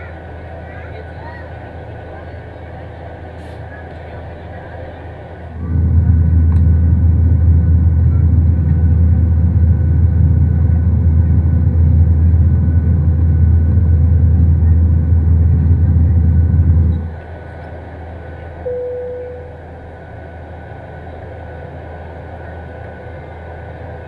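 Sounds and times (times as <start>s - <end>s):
airliner cabin rumble: 0.0s - 24.0s.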